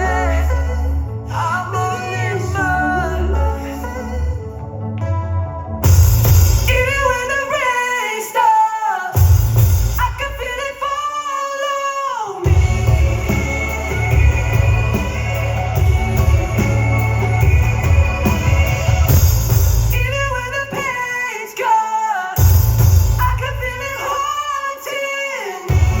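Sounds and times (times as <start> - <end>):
person singing: 0.0 - 5.4, 6.6 - 26.0
live pop band playing: 0.0 - 26.0.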